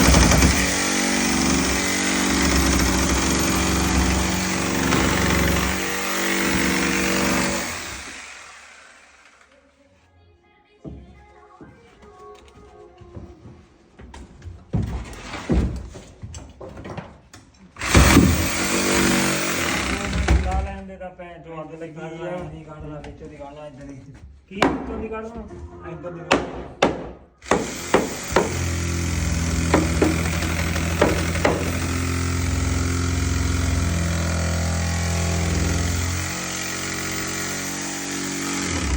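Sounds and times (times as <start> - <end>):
sharp knocks: 29.5 - 31.9.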